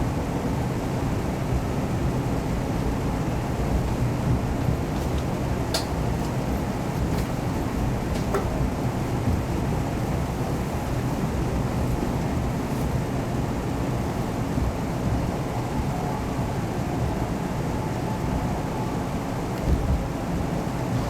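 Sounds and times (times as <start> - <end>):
train cabin running rumble: 0.0 - 21.0.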